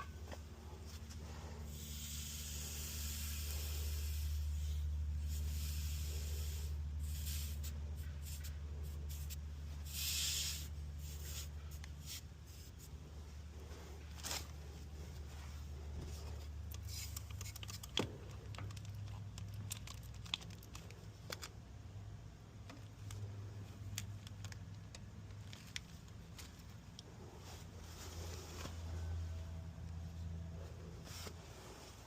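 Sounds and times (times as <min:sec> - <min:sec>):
low machine hum: 0:00.0 - 0:32.0
hand work clicks and scrapes: 0:16.0 - 0:21.6.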